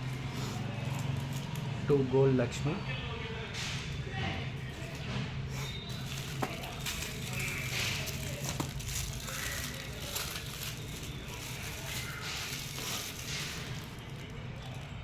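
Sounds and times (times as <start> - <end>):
plastic wrapping crinkling: 4.6 - 15.0.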